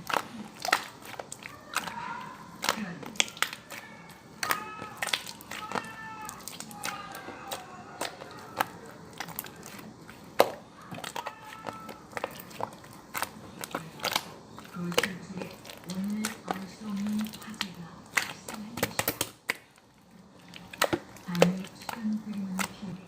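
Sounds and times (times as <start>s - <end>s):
slime popping and clicking: 0.0s - 19.8s
faint voice: 1.4s - 9.7s.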